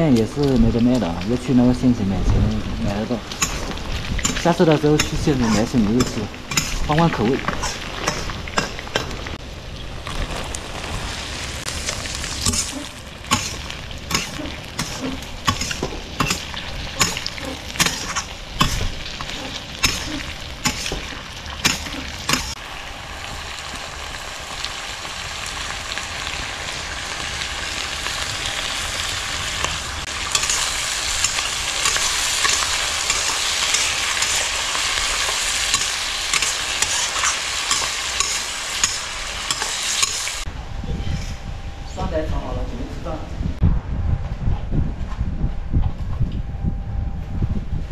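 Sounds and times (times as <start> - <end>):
food sizzling in pan: 0.0 - 40.5
spatula clacking against pan: 6.0 - 6.8.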